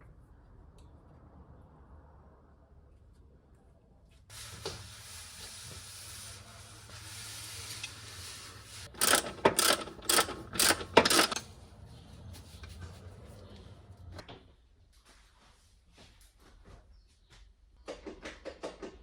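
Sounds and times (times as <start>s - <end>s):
tool rasping against metal: 7.2s - 11.4s.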